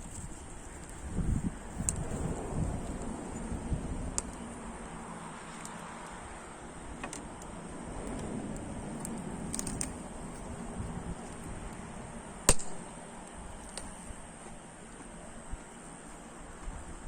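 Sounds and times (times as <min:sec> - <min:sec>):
firewood crackling and popping: 0:07.0 - 0:14.0
sharp loud crack: 0:12.5 - 0:12.9.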